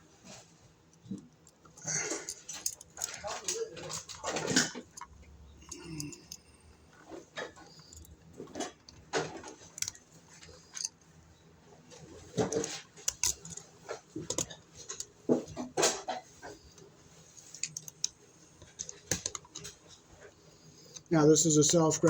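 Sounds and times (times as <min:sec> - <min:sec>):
clicks taps and scrapes: 0:11.9 - 0:21.1.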